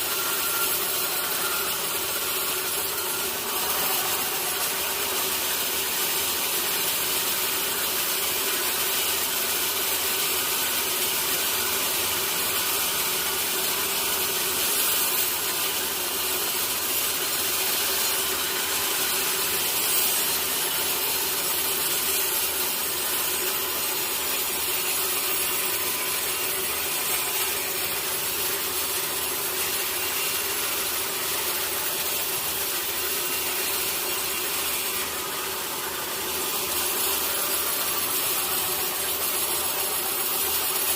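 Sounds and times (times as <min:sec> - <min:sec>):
machine hum: 0:00.0 - 0:08.4
saw blade cutting wood: 0:00.0 - 0:40.9.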